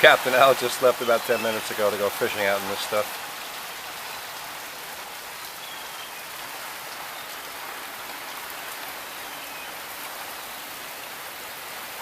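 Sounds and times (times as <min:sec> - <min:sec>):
heavy rain: 0:00.0 - 0:12.0.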